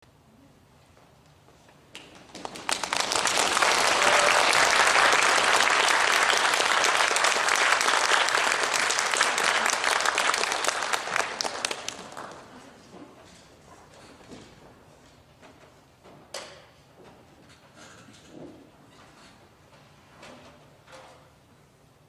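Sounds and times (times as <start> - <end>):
audience applauding: 2.0 - 12.6.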